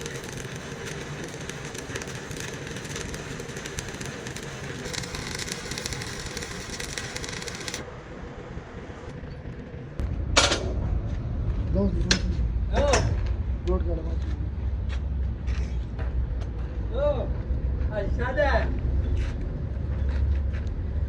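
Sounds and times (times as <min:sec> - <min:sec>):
arc welding crackle: 0:00.0 - 0:07.8
low rumble: 0:07.8 - 0:21.0.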